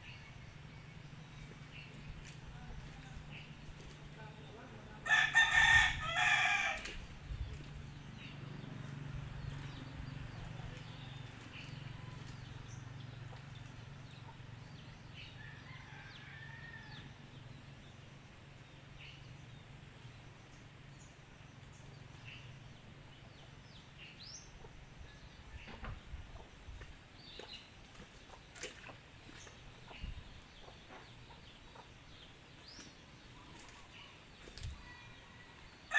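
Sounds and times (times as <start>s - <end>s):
steady low hum: 0.0s - 15.4s
rooster crowing: 5.0s - 7.0s.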